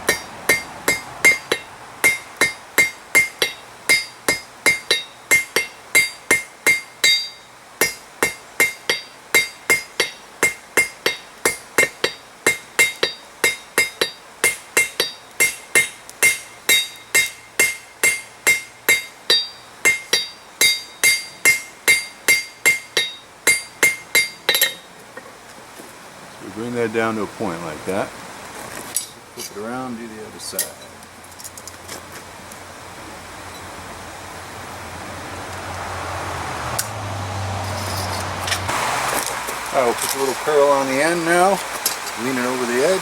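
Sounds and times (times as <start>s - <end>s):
hammer striking steel on anvil: 0.0s - 24.9s.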